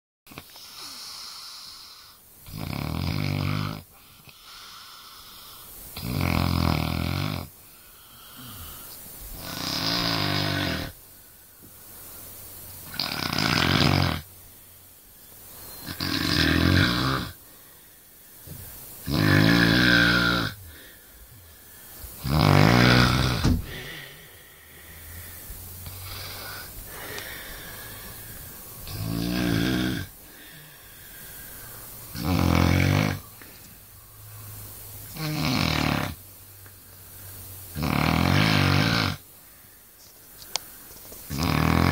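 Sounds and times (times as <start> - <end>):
person snoring: 0.3 - 11.0, 12.8 - 14.3, 15.8 - 17.4, 18.5 - 21.0, 22.2 - 33.3, 35.1 - 36.2, 37.7 - 39.2, 41.3 - 41.9
quiet breathing: 0.4 - 2.3, 3.9 - 6.0, 7.5 - 9.4, 14.3 - 15.8, 17.3 - 19.0, 20.2 - 32.2, 33.1 - 35.1, 36.6 - 37.7, 39.2 - 41.2.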